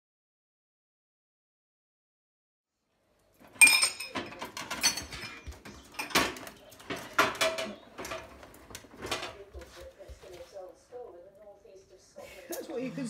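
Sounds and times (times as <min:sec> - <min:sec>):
dishes and cutlery clinking: 0:03.4 - 0:10.5.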